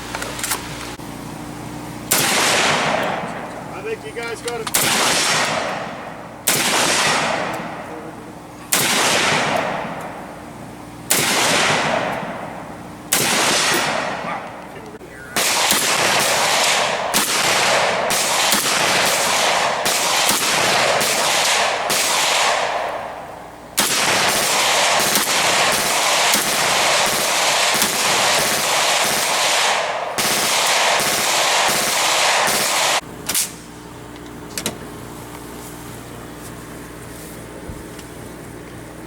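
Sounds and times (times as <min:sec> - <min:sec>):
rapid gunfire: 0:02.1 - 0:03.1, 0:04.7 - 0:07.8, 0:08.7 - 0:10.0, 0:11.1 - 0:12.5, 0:13.1 - 0:14.4, 0:15.4 - 0:23.2, 0:23.8 - 0:33.6
single gunshots: 0:02.1 - 0:03.5, 0:04.7 - 0:07.8, 0:08.7 - 0:10.2, 0:11.1 - 0:14.6, 0:15.4 - 0:23.2, 0:23.8 - 0:33.7.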